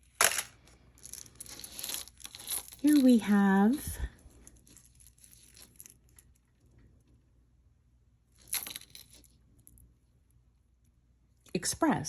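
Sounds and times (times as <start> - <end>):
metal jewelry clinking: 0.0 - 6.4, 8.4 - 9.7.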